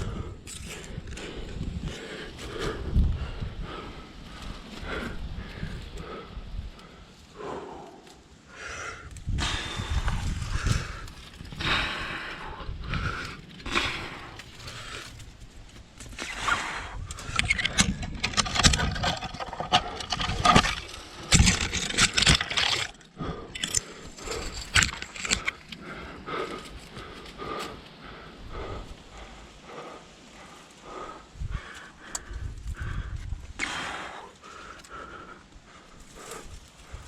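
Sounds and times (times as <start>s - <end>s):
climbing gear scraping on rock: 12.8s - 27.8s.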